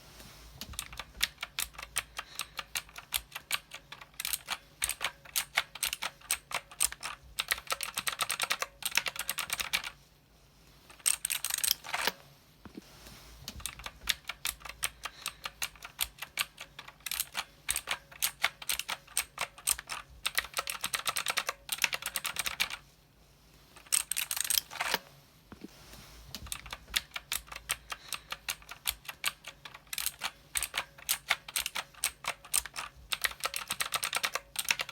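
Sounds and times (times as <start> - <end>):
mechanical keyboard typing: 0.6 - 10.0, 10.9 - 12.2, 13.5 - 22.8, 23.8 - 25.0, 26.4 - 34.9.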